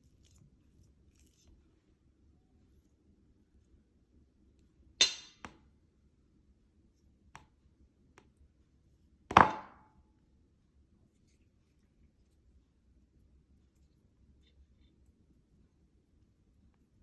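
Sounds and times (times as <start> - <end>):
kitchenware clinking: 5.0 - 5.4.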